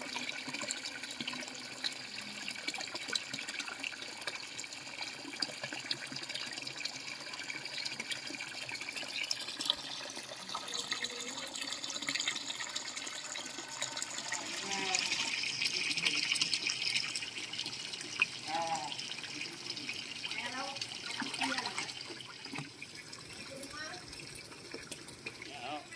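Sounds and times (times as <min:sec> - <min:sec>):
running water: 0:00.0 - 0:25.9
faint voices: 0:10.3 - 0:17.7, 0:18.3 - 0:22.0.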